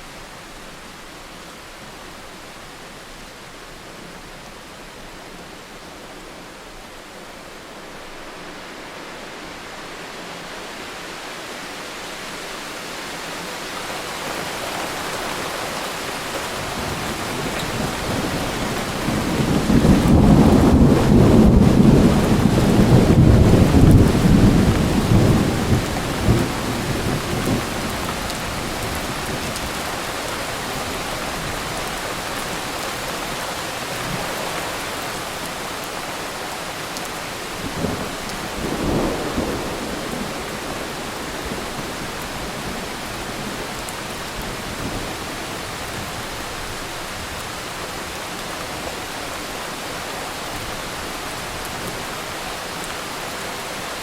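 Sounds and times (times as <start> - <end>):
steady rain: 0.0 - 54.0
thunder rumble: 16.6 - 29.8.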